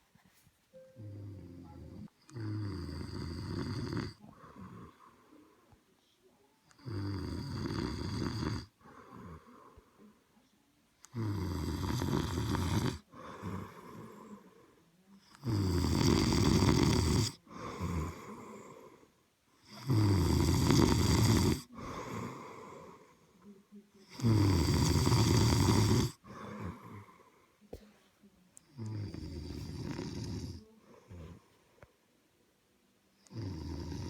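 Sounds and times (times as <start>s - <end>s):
quiet breathing: 0.0s - 34.0s
loud snoring: 1.0s - 5.2s, 6.7s - 9.7s, 11.1s - 14.4s, 15.3s - 18.9s, 19.6s - 23.1s, 24.1s - 27.2s, 28.7s - 31.5s, 33.3s - 34.0s.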